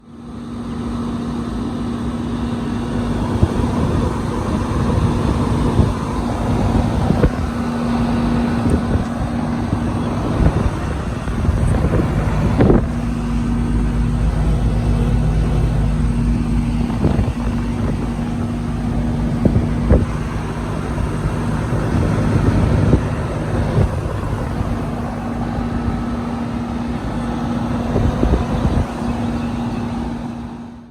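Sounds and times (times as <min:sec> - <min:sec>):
compressor electrical hum: 0:00.0 - 0:30.9
fan air rushing: 0:00.0 - 0:30.9.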